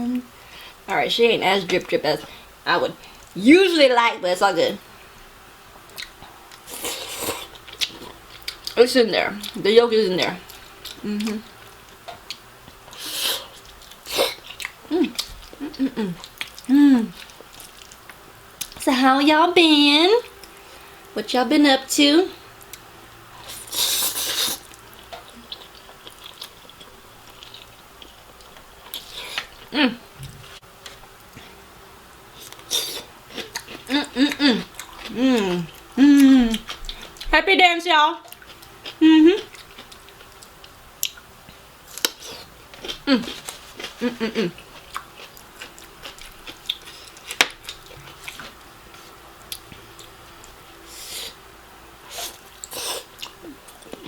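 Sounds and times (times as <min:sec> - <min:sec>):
wet chewing and lip smacks: 0:05.9 - 0:06.7
quiet wet chewing: 0:05.9 - 0:08.8, 0:10.3 - 0:18.8, 0:22.6 - 0:31.6, 0:38.2 - 0:51.4, 0:52.1 - 0:54.0.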